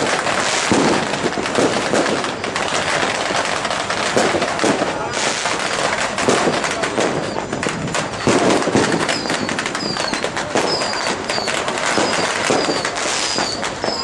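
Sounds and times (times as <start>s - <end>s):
firecrackers crackling: 0.0s - 14.0s
high falling whistles: 7.1s - 14.0s.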